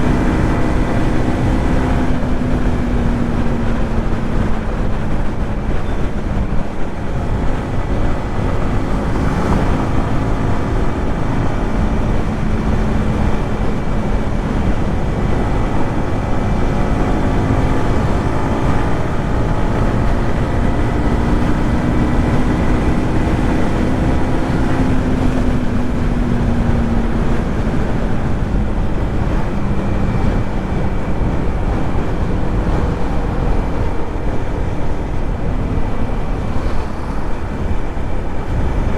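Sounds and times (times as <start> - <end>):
motorcycle engine cruising: 0.0 - 38.9
wind rushing over microphone: 0.0 - 38.9.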